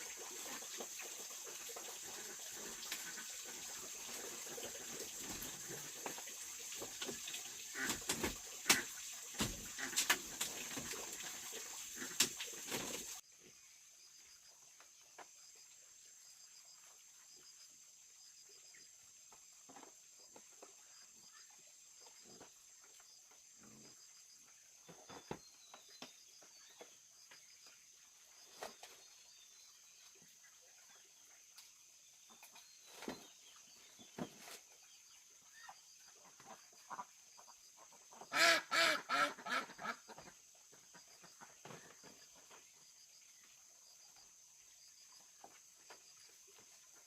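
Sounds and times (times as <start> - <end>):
fowl harsh calls: 38.3 - 40.1.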